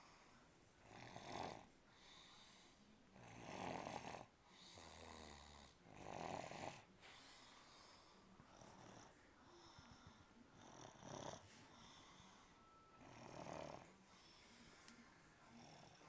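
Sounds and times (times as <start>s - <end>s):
faint snoring: 0.0s - 16.0s
quiet breathing: 0.0s - 16.0s.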